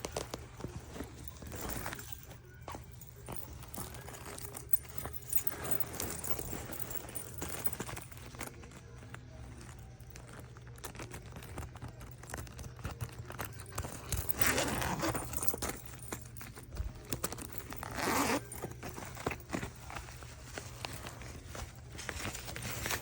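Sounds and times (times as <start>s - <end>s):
backpack clicks and rustles: 0.0s - 23.0s
zipper pulls: 11.0s - 19.7s.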